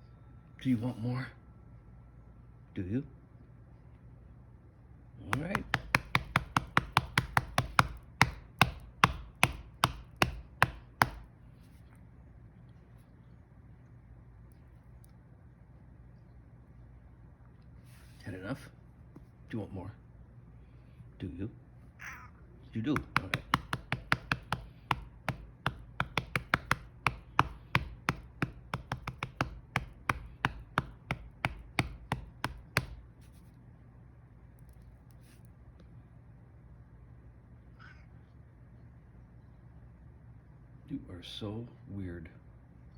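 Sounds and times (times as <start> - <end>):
hand patting cat's belly: 5.3 - 11.3, 22.9 - 33.4.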